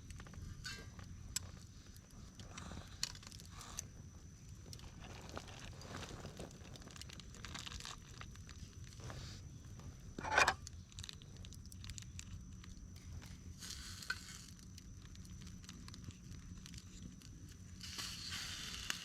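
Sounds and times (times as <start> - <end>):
campfire crackling and popping: 10.6 - 19.0.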